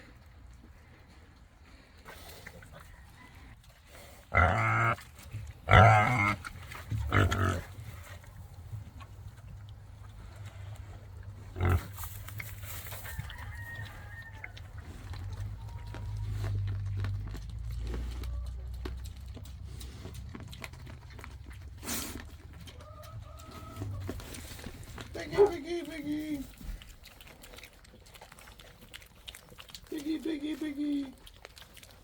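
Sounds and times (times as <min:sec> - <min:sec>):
chickens clucking: 0:08.3 - 0:25.6.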